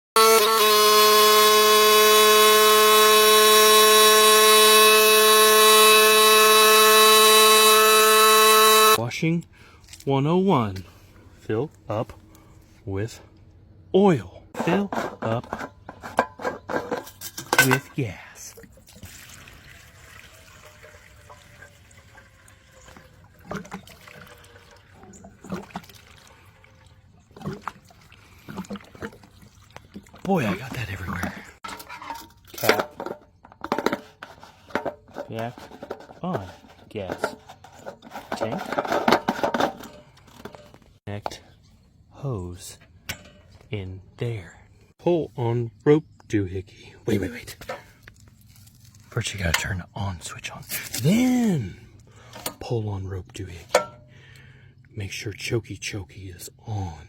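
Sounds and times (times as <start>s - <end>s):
loud steady droning tone: 0.2s - 9.0s
liquid pouring into tank: 18.6s - 30.3s.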